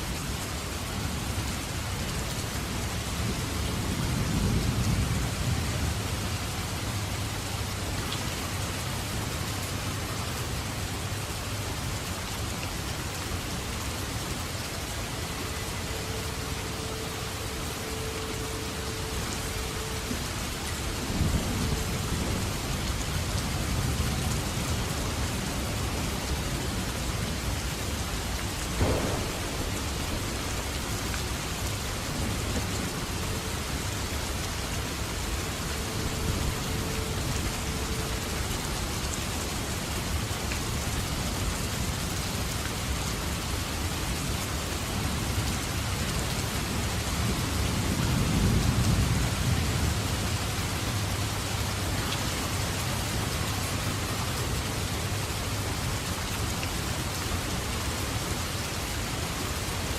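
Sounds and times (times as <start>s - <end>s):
heavy rain falling: 0.0s - 59.9s
thunder rolling: 28.7s - 34.1s
sharp thunder crack: 28.8s - 31.0s.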